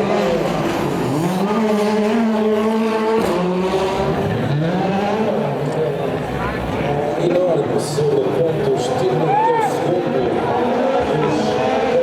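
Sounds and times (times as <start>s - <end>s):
rally car engine accelerating: 0.0s - 12.0s.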